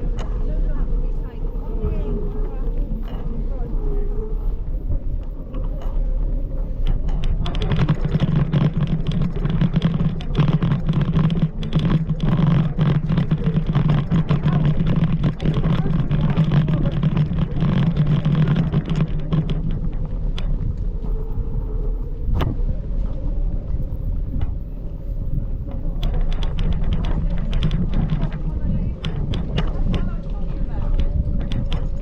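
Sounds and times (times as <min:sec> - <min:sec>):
low motor hum: 0:00.0 - 0:32.0
rattling clicks and knocks: 0:05.1 - 0:21.4, 0:23.8 - 0:32.0.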